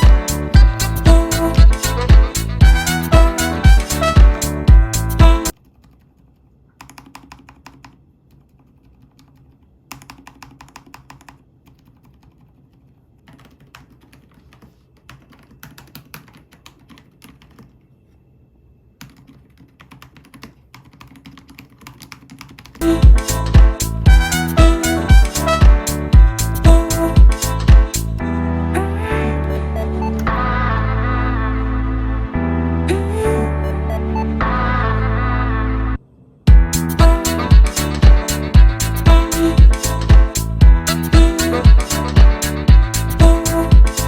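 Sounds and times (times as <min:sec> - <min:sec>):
background music: 0:00.0 - 0:05.6, 0:22.8 - 0:44.0
muted keyboard typing: 0:05.5 - 0:17.8, 0:19.0 - 0:22.8.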